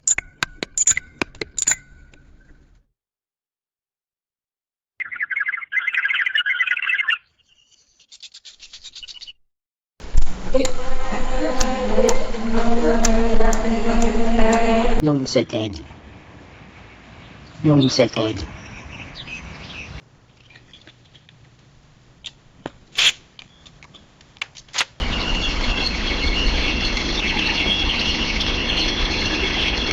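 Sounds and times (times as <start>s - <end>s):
bird rapid chattering call: 5.0s - 7.7s
chorus of chattering birds: 5.0s - 7.9s, 16.8s - 20.8s, 25.0s - 29.9s.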